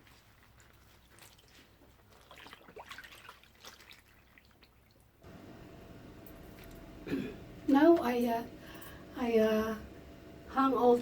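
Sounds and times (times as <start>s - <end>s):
water dripping from clothes: 1.0s - 5.2s.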